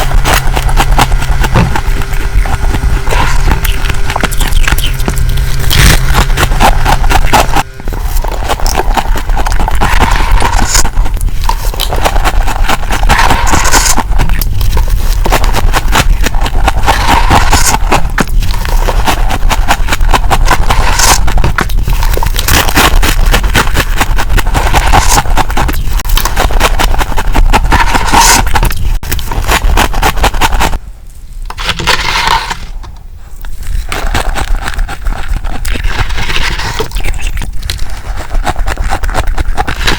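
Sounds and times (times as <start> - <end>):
frost being chewed: 0.0 - 30.8, 33.4 - 39.9.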